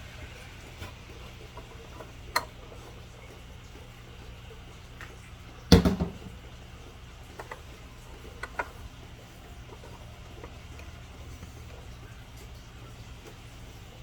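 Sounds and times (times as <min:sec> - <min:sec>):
clatter of quick knocks: 0:05.7 - 0:06.4.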